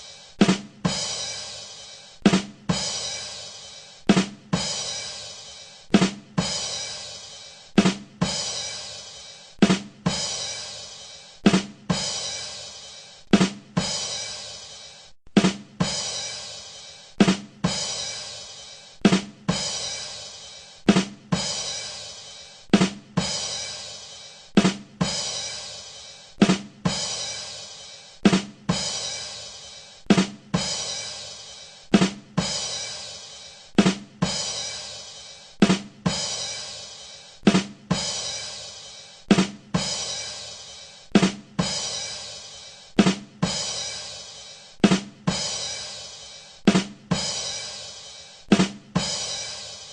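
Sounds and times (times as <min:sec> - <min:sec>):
drum hits: 0:07.8 - 0:08.4, 0:09.6 - 0:10.4, 0:13.3 - 0:14.0, 0:15.3 - 0:16.1, 0:17.2 - 0:17.8, 0:19.0 - 0:19.9, 0:22.7 - 0:23.5, 0:26.4 - 0:27.2, 0:28.2 - 0:29.0, 0:31.9 - 0:32.8, 0:35.6 - 0:36.4, 0:37.4 - 0:38.2, 0:39.3 - 0:40.0, 0:44.8 - 0:45.5, 0:46.7 - 0:47.4, 0:48.5 - 0:49.7.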